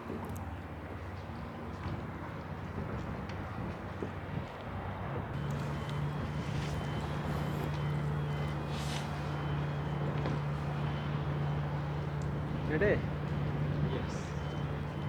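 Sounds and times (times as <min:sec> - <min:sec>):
constant background noise: 0:00.0 - 0:15.0
low engine hum: 0:00.0 - 0:15.0.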